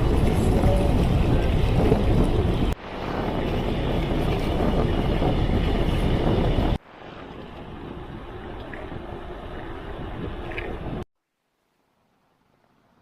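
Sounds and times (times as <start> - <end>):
wind buffeting microphone: 0.0 - 11.1.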